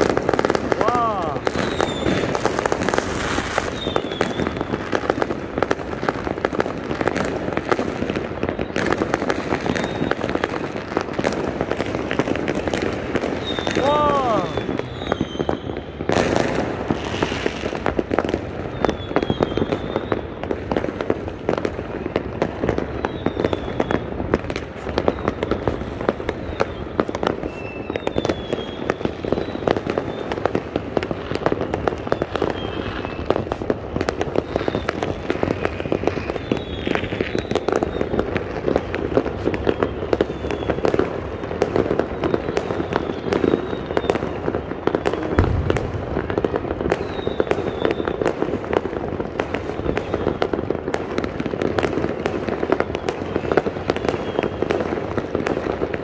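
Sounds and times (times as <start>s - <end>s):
fireworks popping and crackling: 0.0s - 56.0s
fireworks whistling: 0.0s - 56.0s.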